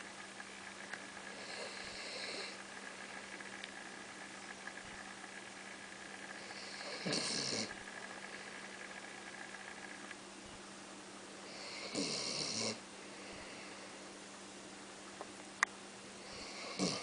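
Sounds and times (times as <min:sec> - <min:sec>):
dog snoring: 0:01.3 - 0:03.2, 0:06.3 - 0:08.7, 0:11.4 - 0:13.9, 0:16.2 - 0:17.0.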